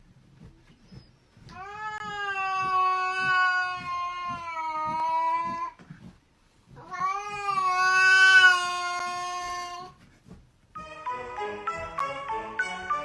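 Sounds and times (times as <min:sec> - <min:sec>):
cat yowling: 0:06.8 - 0:09.9.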